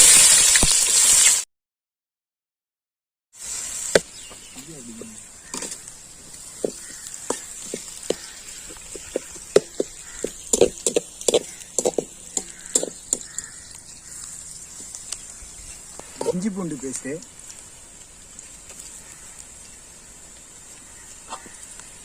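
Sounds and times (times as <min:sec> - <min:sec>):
onions sizzling in hot oil: 0:00.0 - 0:01.4, 0:03.4 - 0:22.0
ladle scraping and knocking pan: 0:05.5 - 0:05.8.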